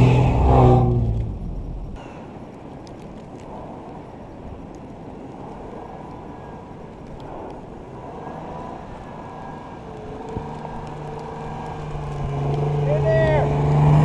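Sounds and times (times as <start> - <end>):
vehicle plowing through snow: 0.0 - 1.9, 5.0 - 14.0.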